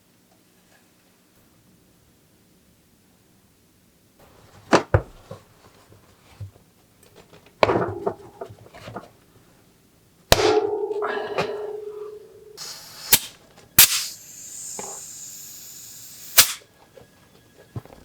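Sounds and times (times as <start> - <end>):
ringing metallic strike: 10.4 - 12.6
sharp clicks: 12.6 - 15.1, 16.1 - 16.6.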